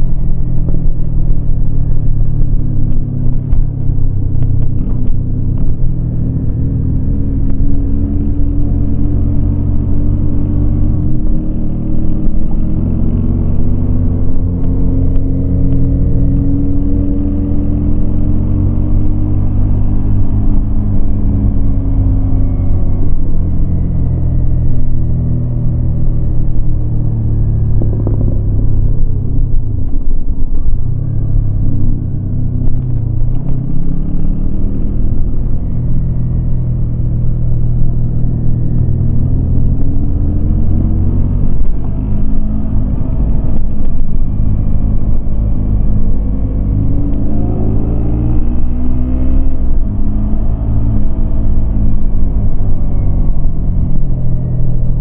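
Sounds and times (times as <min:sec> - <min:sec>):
motorcycle engine revving: 0:00.0 - 0:29.9, 0:31.0 - 0:55.0.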